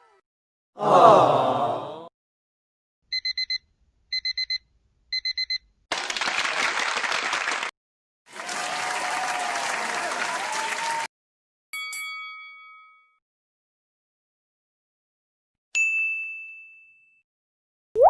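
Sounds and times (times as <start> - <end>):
digital alarm clock beeping: 3.1 - 5.6
applause: 5.9 - 11.1.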